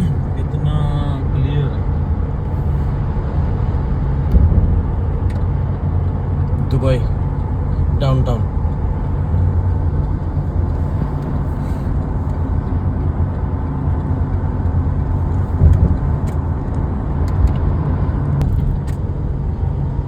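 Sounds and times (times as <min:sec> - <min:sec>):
car driving rumble: 0:00.0 - 0:20.0
car bump: 0:04.3 - 0:05.4, 0:15.2 - 0:16.5.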